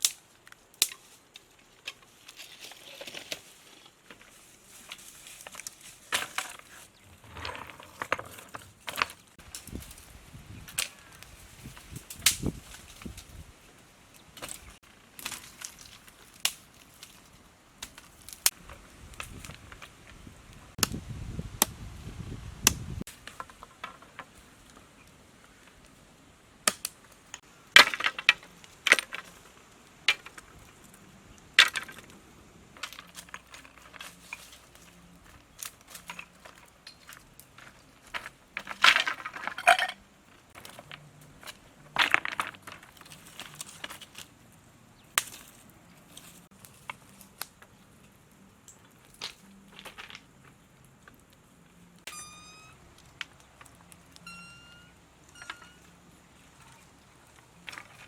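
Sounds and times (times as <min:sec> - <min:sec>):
objects being handled: 0:00.0 - 0:13.4, 0:31.6 - 0:44.4, 0:52.0 - 0:58.0
crunching or scraping: 0:00.0 - 0:21.0, 0:26.7 - 0:58.0.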